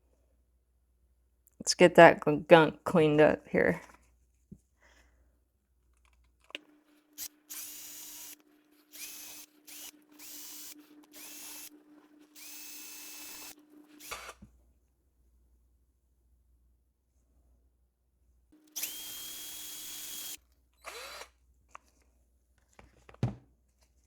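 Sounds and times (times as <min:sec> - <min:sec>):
power drill whining: 0:06.5 - 0:14.4, 0:18.6 - 0:21.4.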